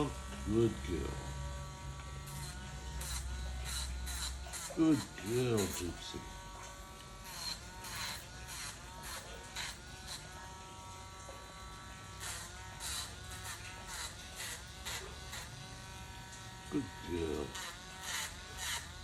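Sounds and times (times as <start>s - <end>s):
pet nail grinder buzzing: 0.0s - 19.0s
scratchy grinding on nails: 2.3s - 10.8s, 12.0s - 15.6s, 16.8s - 19.0s.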